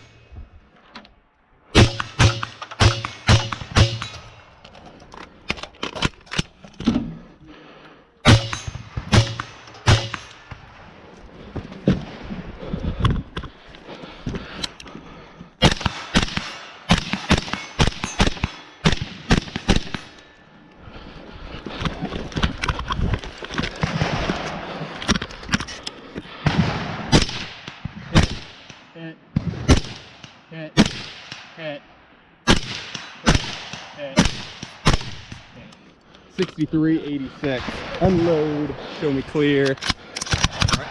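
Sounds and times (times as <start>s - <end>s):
rifle shots: 1.7s - 4.4s, 8.2s - 11.0s, 15.6s - 20.2s, 23.8s - 24.8s, 26.4s - 31.6s, 32.4s - 35.6s, 39.8s - 40.9s.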